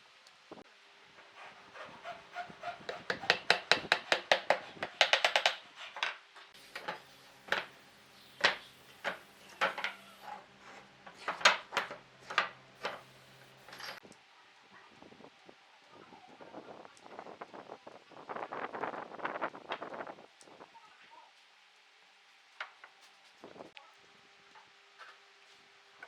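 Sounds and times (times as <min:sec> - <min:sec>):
hand tool rasping on wood: 0:01.2 - 0:06.1.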